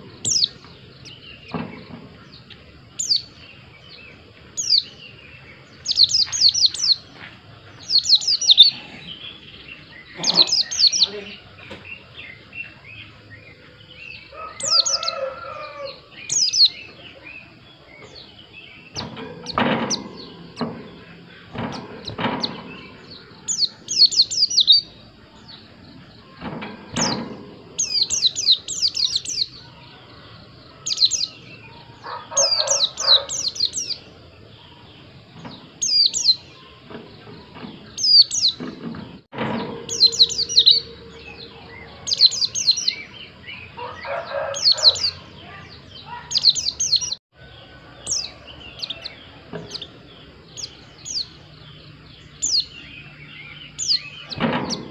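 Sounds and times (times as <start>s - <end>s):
bird high twittering song: 0.0s - 54.9s
lower bird calls: 0.0s - 54.9s
sharp knocks: 18.9s - 23.2s, 26.4s - 28.1s, 54.3s - 54.9s.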